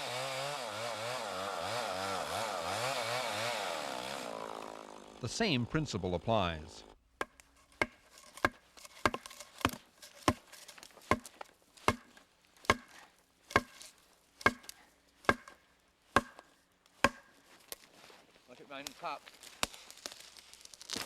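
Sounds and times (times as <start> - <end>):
blows driving a wedge into wood: 0.0 - 5.4, 6.8 - 17.8.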